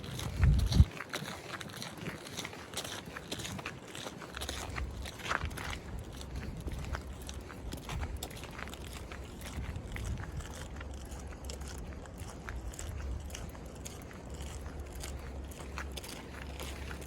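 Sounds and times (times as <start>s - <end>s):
steady low rumble: 0.0s - 0.9s, 4.3s - 17.0s.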